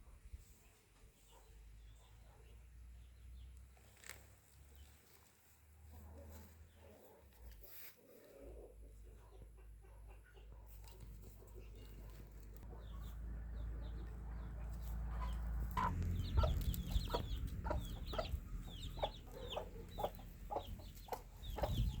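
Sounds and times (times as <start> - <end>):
chickens clucking: 5.9 - 22.0
low steady rumble: 12.3 - 22.0.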